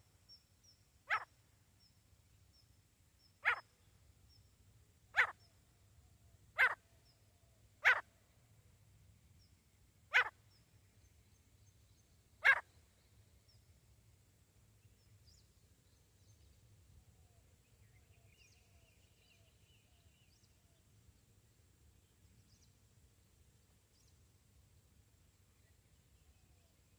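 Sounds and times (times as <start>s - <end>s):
francolin calls: 0.3s - 1.9s, 3.2s - 3.9s, 5.1s - 5.5s, 6.6s - 7.2s, 7.8s - 8.1s, 10.1s - 10.6s, 12.4s - 12.8s.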